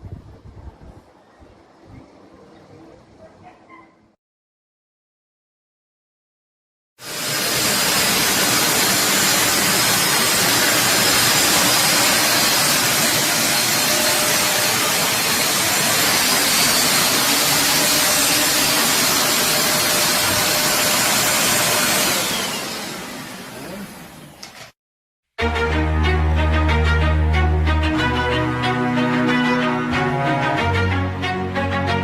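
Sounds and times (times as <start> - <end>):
stick vacuum cleaner running: 7.0 - 24.7.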